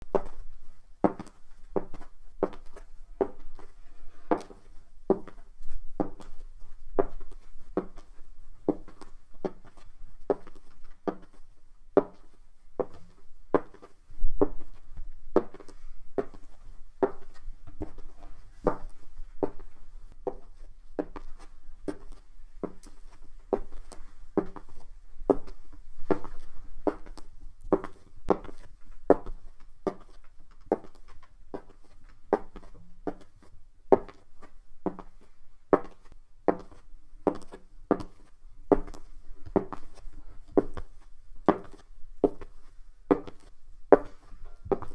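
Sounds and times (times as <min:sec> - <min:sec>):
hard heels walking on hard floor: 0:04.3 - 0:06.4, 0:12.0 - 0:31.8, 0:33.9 - 0:44.9.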